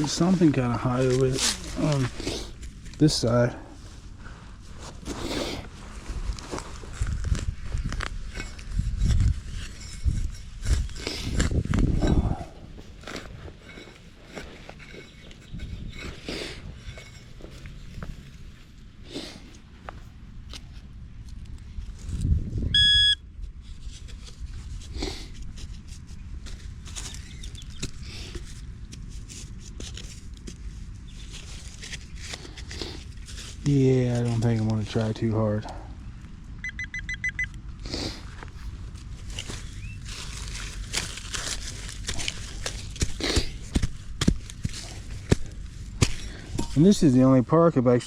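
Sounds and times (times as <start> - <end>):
footsteps through dry grass: 0.0 - 3.2, 3.9 - 9.6, 38.2 - 47.1
rustling: 0.0 - 22.4, 23.4 - 36.4, 38.0 - 47.2
metal detector beep: 22.7 - 23.2, 36.6 - 37.6.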